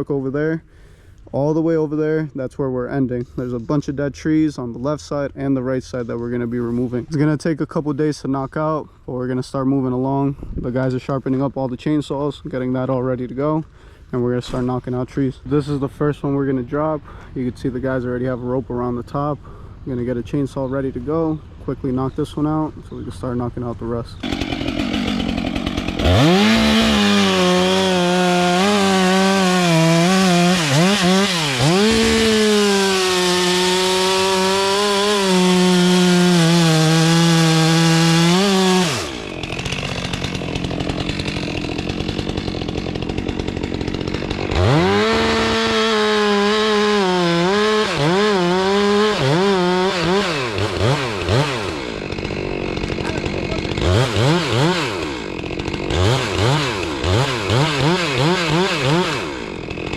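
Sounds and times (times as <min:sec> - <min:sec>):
chainsaw revving and cutting: 0:24.2 - 0:59.9.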